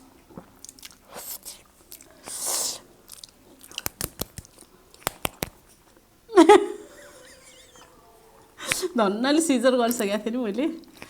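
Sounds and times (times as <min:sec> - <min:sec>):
person chewing: 0:00.3 - 0:06.0
wet clicking mouth sounds: 0:00.6 - 0:05.6
short hissy bursts: 0:02.2 - 0:02.9.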